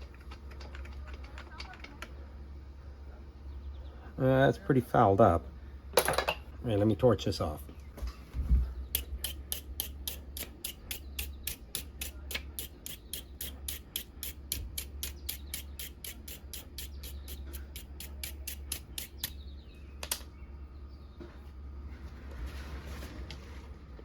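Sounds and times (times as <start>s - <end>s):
torch igniter clicking: 8.9s - 19.4s.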